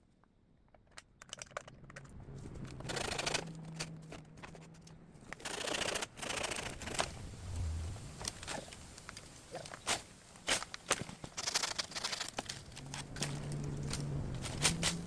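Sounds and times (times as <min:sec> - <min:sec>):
dry leaves rustling: 0:06.6 - 0:15.0
twigs clicking: 0:08.1 - 0:15.0.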